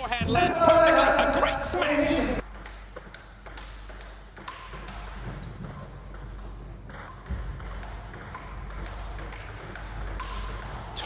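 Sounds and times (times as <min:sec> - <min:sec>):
background noise: 0:00.0 - 0:11.0
ping-pong ball clicking: 0:02.4 - 0:11.0.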